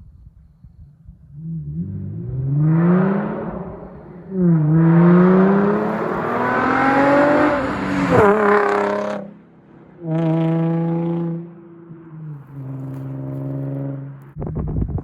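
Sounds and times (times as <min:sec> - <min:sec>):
car engine revving loudly: 0:01.4 - 0:11.7.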